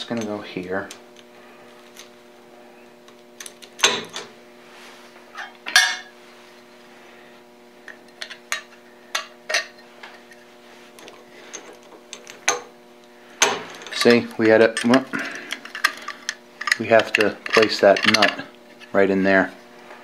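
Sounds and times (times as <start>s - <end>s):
faint steady hum: 0.0s - 20.0s
small metal parts clinking: 13.4s - 18.5s.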